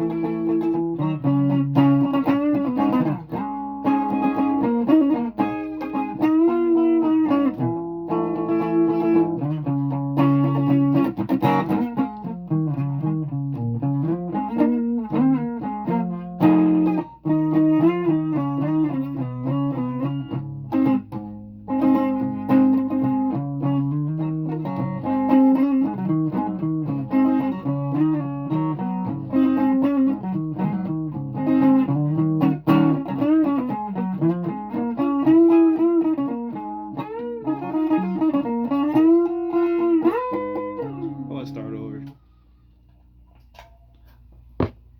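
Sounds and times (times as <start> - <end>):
guitar playing notes and chords: 0.0 - 42.5.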